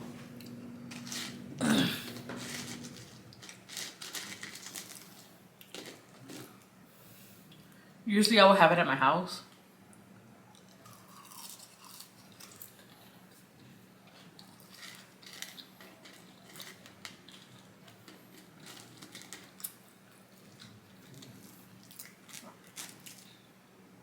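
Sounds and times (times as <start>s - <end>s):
faint low hum: 0.0s - 24.0s
chewing and crunching: 2.0s - 6.7s, 10.5s - 23.5s.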